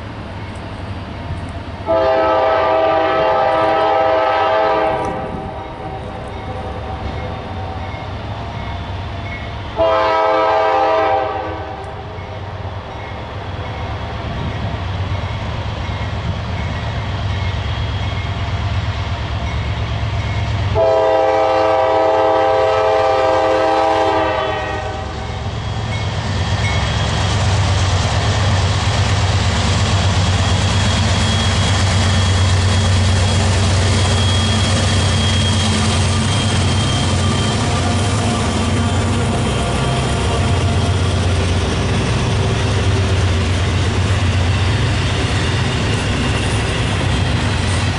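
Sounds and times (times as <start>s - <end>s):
low rumble of passing train: 0.0s - 47.9s
locomotive air horn blasts: 1.8s - 5.7s, 9.8s - 11.9s, 20.7s - 25.3s.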